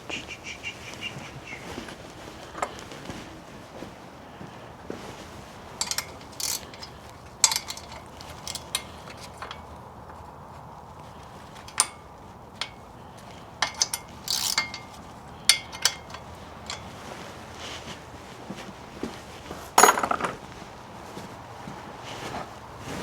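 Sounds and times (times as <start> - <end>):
metal hand tools clicking: 5.8 - 9.8, 11.6 - 16.9.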